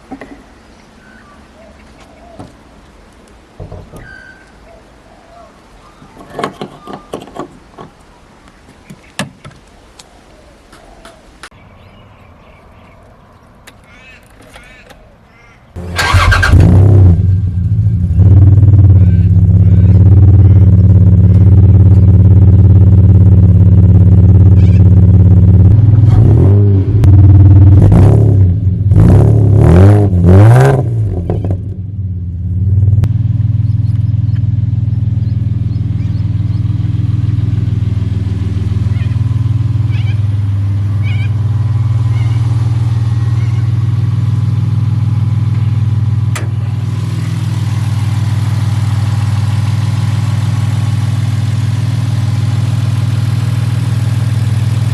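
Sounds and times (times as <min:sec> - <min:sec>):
car engine idling and revving: 0:15.8 - 0:54.9.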